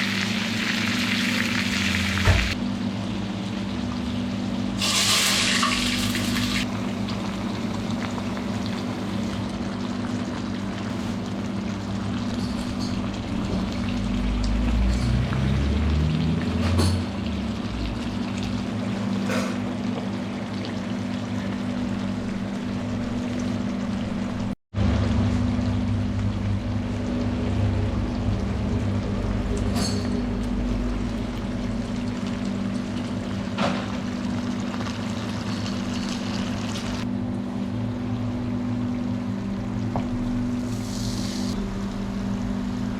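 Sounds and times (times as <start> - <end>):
food sizzling in a pan: 0.0 - 2.6, 4.8 - 14.1, 33.8 - 37.0, 40.4 - 41.6
low hum: 24.4 - 33.0.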